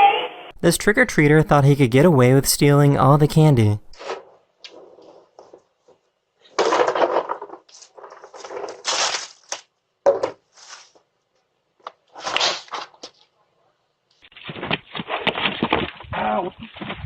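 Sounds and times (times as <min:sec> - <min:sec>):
candy wrappers rustling: 0:06.9 - 0:09.7.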